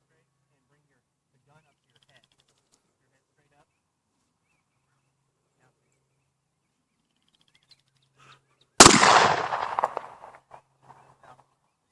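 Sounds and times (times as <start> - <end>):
pistol shot with echo: 8.8 - 10.5.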